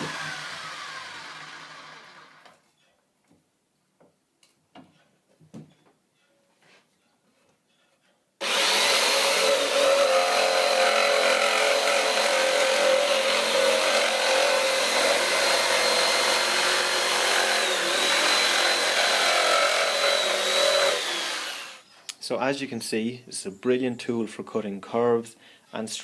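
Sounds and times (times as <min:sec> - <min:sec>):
electric jigsaw cutting wood: 0:00.0 - 0:02.6, 0:08.4 - 0:21.8.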